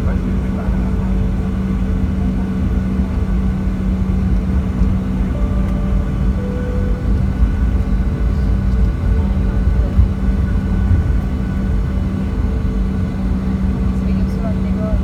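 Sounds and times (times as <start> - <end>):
jet engines rumbling in cabin: 0.0 - 15.0.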